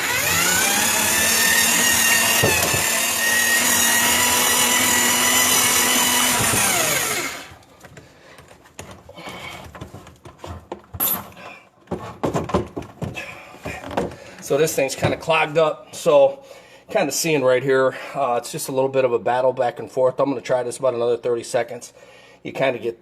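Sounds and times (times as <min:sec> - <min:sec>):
drain machine motor whining: 0:00.0 - 0:07.6
clatter and knocks: 0:02.3 - 0:03.0, 0:07.8 - 0:14.3.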